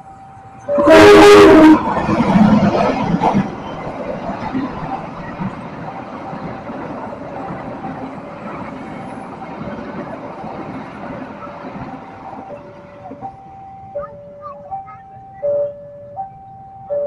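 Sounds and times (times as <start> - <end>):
two-tone crossing alarm: 0.0 - 2.1, 11.4 - 17.0
train rumbling past: 0.0 - 17.0.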